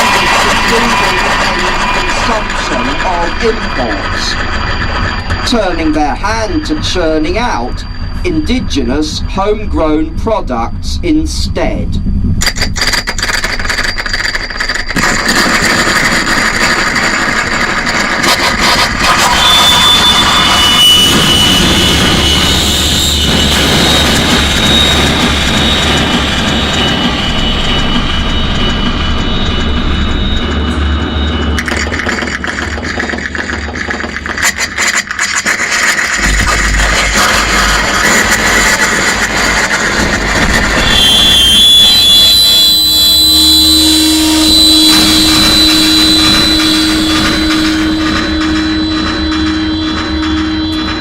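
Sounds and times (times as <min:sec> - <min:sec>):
dense noise drone: 0:00.0 - 0:51.0
roaring electronic noise: 0:00.0 - 0:51.0
steady low hum: 0:00.0 - 0:51.0
thin high tones: 0:15.9 - 0:51.0.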